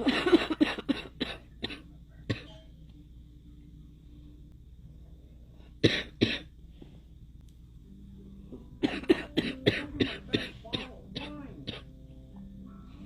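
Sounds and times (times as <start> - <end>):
girl coughing: 0.0 - 2.5, 5.8 - 6.5, 8.8 - 11.9.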